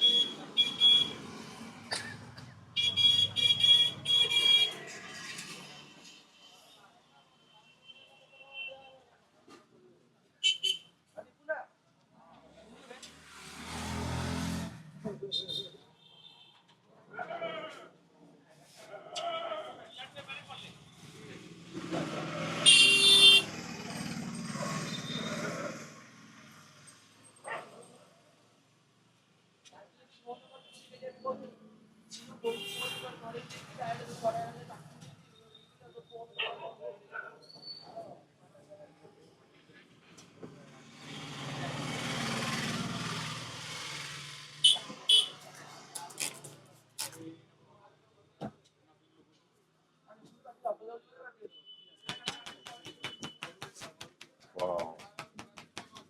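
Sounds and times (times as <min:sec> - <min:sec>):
car horn honking: 0:00.0 - 0:01.2, 0:02.8 - 0:04.8, 0:22.6 - 0:23.5, 0:32.5 - 0:33.1, 0:44.6 - 0:45.4.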